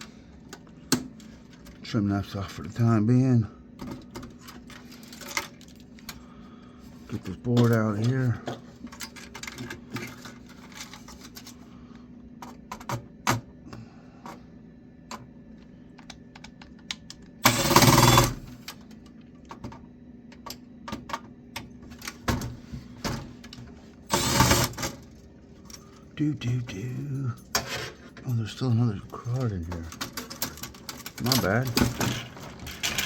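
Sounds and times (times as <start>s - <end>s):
computer parts clicking and clattering: 7.1s - 11.6s, 12.4s - 13.5s, 16.0s - 33.0s.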